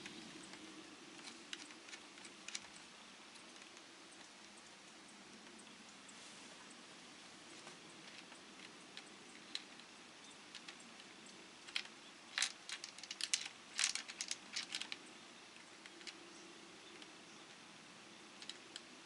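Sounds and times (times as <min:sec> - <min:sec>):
faint steady hum: 0:00.0 - 0:19.0
sharp clicks and light taps: 0:18.4 - 0:18.9.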